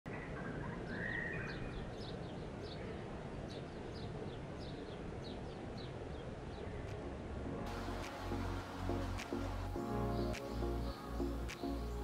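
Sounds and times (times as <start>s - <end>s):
bird chirping: 0.1s - 7.0s.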